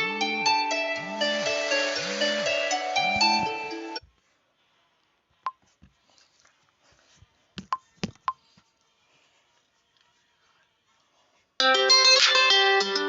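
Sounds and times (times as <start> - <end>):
harp-like alarm melody: 0.0 - 4.0.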